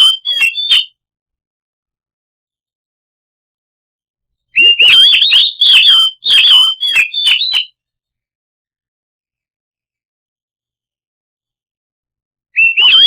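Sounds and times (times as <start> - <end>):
bird singing whistled notes: 0.0 - 0.9, 4.6 - 7.7, 12.6 - 13.0.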